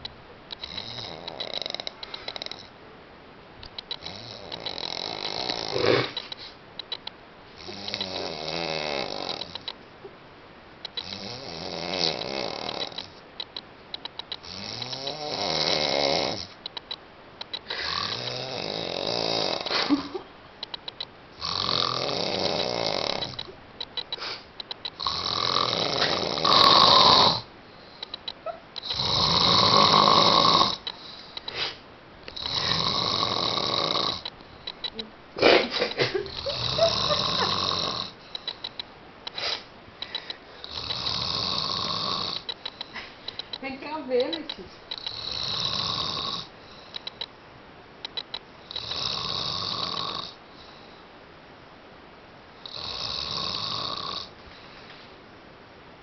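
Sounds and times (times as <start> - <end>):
person snoring: 0.6 - 2.7, 4.0 - 6.2, 7.6 - 9.6, 11.0 - 13.2, 14.4 - 16.6, 17.7 - 20.0, 21.4 - 23.4, 25.0 - 27.5, 28.8 - 34.2, 36.2 - 38.2, 40.6 - 42.5, 45.0 - 46.5, 48.7 - 50.4, 52.6 - 54.3.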